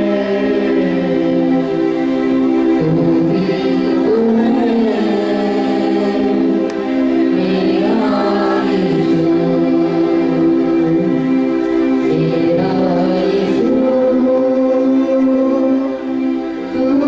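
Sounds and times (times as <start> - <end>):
held instrumental chords: 0.0 - 17.0
voices singing together: 0.0 - 17.0.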